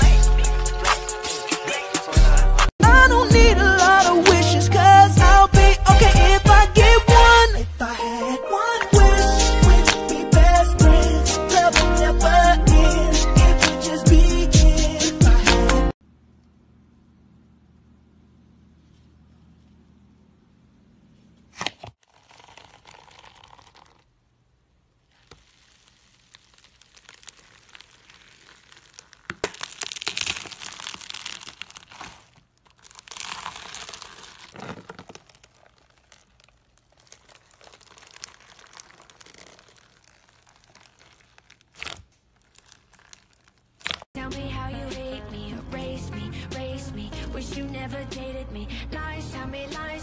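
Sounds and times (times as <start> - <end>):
slime crackling and crinkling: 21.5 - 44.2.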